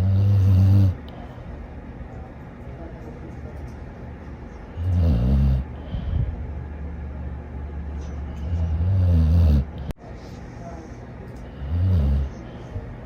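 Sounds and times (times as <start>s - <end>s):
dog snoring: 0.0s - 1.1s, 4.8s - 5.8s, 8.4s - 9.9s, 11.6s - 12.4s
dog breathing: 4.6s - 6.5s.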